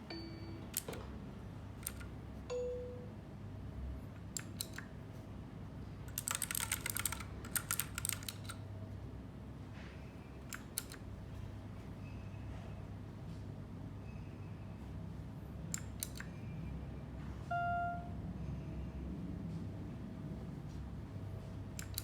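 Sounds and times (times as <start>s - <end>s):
low steady hum: 0.0s - 4.2s, 16.5s - 21.7s
mechanical keyboard clicking: 0.6s - 1.1s, 1.8s - 2.2s, 4.2s - 4.9s, 6.1s - 8.6s, 10.5s - 11.1s, 15.7s - 16.3s, 21.8s - 22.0s
brief beep: 17.5s - 18.2s.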